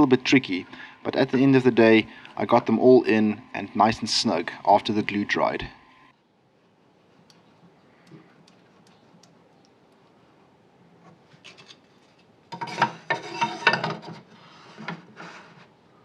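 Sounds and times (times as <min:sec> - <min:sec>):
wood scraping by hand: 0:11.1 - 0:15.8.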